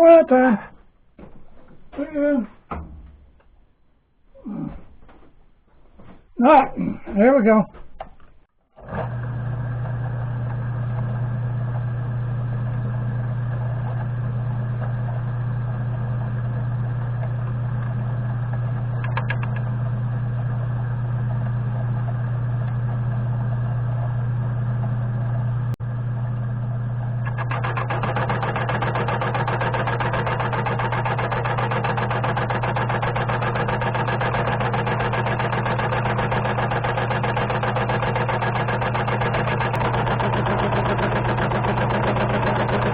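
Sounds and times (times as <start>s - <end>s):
electric motor humming: 8.8s - 42.9s
machine grinding: 8.8s - 42.9s.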